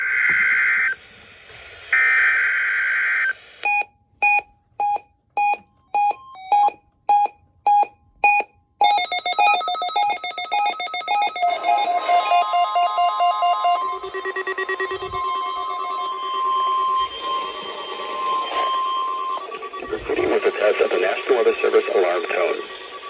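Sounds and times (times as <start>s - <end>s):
short electronic beeps: 3.6s - 20.6s
electronic alarm stepping tones: 3.7s - 23.0s
steady alarm tone: 3.7s - 23.0s
harsh buzzing data burst: 10.4s - 23.0s.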